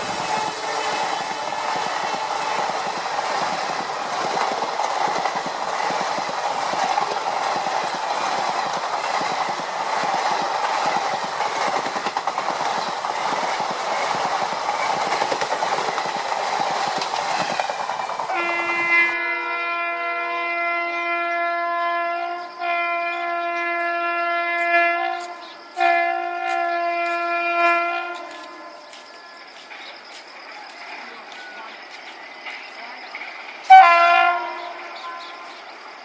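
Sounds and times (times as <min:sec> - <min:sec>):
train horn: 0:00.0 - 0:03.5, 0:18.3 - 0:29.0, 0:33.6 - 0:35.6
train wheels rattling on track: 0:00.0 - 0:19.2, 0:22.6 - 0:36.0.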